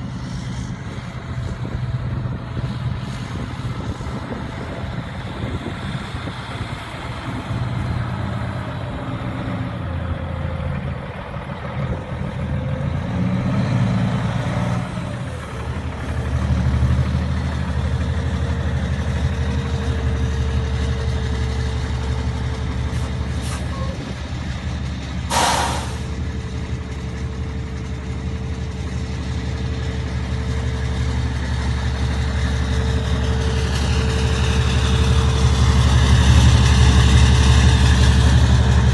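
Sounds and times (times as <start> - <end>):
truck diesel engine running: 0.0 - 38.9
air brakes hiss: 22.9 - 24.0, 25.3 - 26.1.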